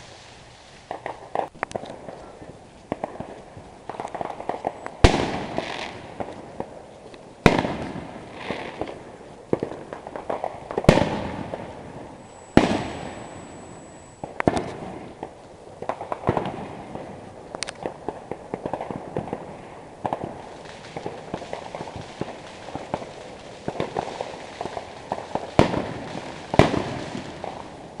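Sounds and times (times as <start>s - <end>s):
fireworks booming: 0.0s - 28.0s
fireworks crackling: 0.0s - 28.0s
high firework whistle: 10.8s - 15.4s.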